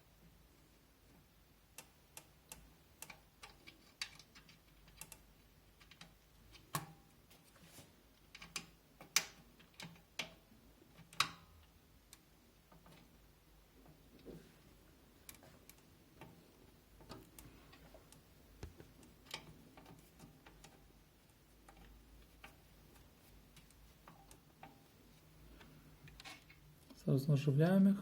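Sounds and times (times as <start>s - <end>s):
light clicks and taps: 1.7s - 7.5s.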